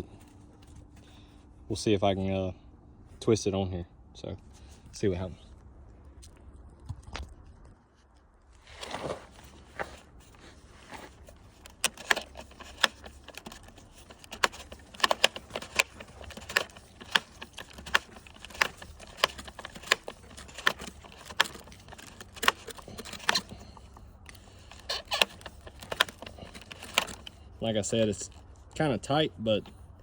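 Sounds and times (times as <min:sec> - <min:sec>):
plastic ratchet clicks: 0:11.6 - 0:27.4.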